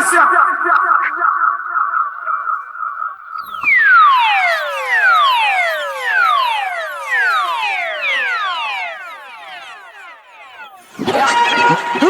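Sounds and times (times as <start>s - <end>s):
electronic siren-like sweeps: 3.4s - 12.0s.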